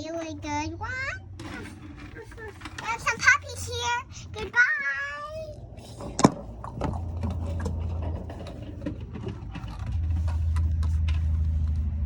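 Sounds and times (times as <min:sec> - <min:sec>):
low hum: 0:00.0 - 0:12.0.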